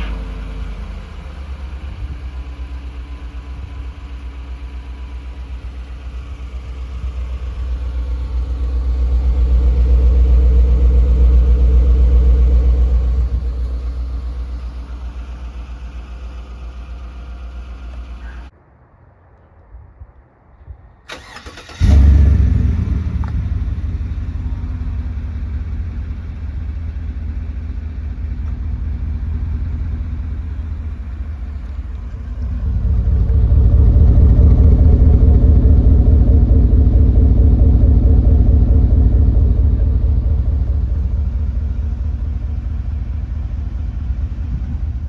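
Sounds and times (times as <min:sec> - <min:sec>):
engine idling through exhaust: 0:00.0 - 0:18.5, 0:21.8 - 0:45.0
engine cranking: 0:21.1 - 0:22.2.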